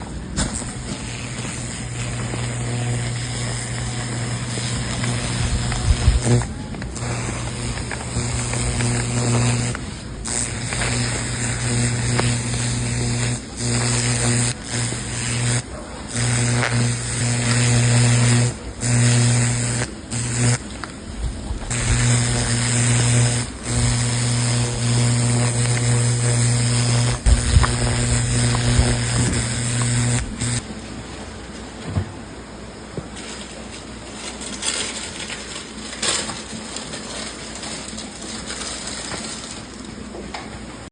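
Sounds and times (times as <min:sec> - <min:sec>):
weld cleaner buzzing hum: 0:00.0 - 0:30.8.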